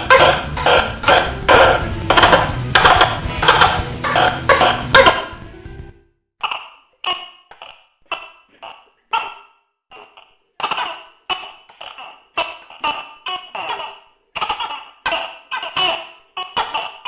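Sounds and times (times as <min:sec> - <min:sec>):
gecko calling: 0:00.0 - 0:05.4.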